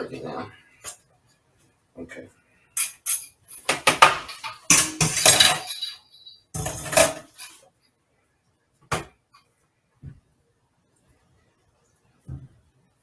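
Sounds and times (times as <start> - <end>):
kitchen utensils clattering: 2.8 - 7.6.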